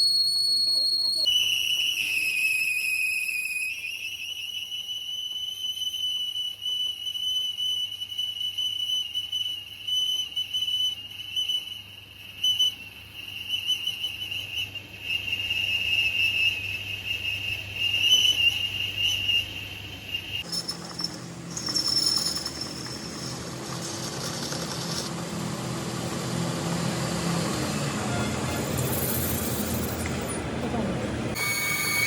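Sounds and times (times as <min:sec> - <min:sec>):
high-pitched whistling tone: 0:00.0 - 0:23.5, 0:31.3 - 0:32.0.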